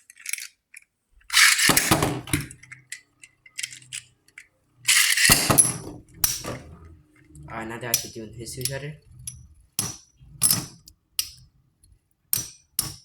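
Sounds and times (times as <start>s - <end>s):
spinning tops ratcheting and clattering: 1.3s - 6.8s.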